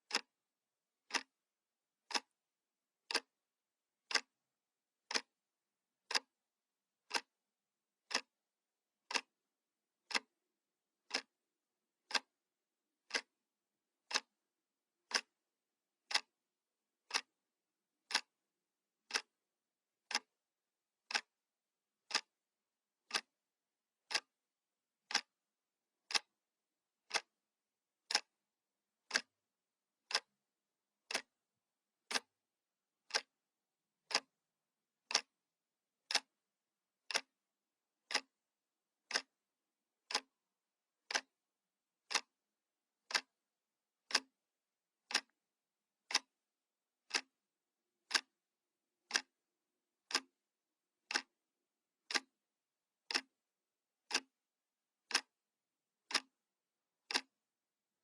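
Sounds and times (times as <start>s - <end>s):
clock ticking: 0.0s - 0.3s, 1.0s - 1.3s, 2.1s - 2.3s, 3.1s - 3.3s, 4.0s - 4.4s, 5.1s - 5.3s, 6.1s - 6.4s, 7.0s - 7.3s, 8.1s - 8.3s, 9.0s - 9.3s, 10.1s - 10.3s, 11.0s - 11.3s, 12.1s - 12.3s, 13.0s - 13.3s, 14.0s - 14.3s, 15.1s - 15.4s, 16.1s - 16.4s, 17.0s - 17.3s, 18.1s - 18.4s, 19.0s - 19.4s, 20.0s - 20.4s, 21.0s - 21.3s, 22.0s - 22.3s, 23.0s - 23.3s, 24.0s - 24.4s, 25.0s - 25.4s, 26.0s - 26.4s, 27.0s - 27.4s, 28.1s - 28.4s, 29.0s - 29.4s, 30.0s - 30.4s, 31.1s - 31.4s, 32.0s - 32.3s, 33.0s - 33.4s, 34.0s - 34.4s, 35.0s - 35.4s, 36.1s - 36.4s, 37.1s - 37.3s, 38.1s - 38.4s, 39.0s - 39.4s, 40.1s - 40.4s, 41.1s - 41.3s, 42.1s - 42.3s, 43.0s - 43.3s, 44.1s - 44.4s, 45.0s - 45.4s, 46.1s - 46.3s, 47.1s - 47.4s, 48.1s - 48.4s, 49.1s - 49.3s, 50.0s - 50.4s, 51.1s - 51.3s, 52.1s - 52.3s, 53.1s - 53.3s, 54.1s - 54.3s, 55.1s - 55.3s, 56.0s - 56.4s, 57.1s - 57.4s.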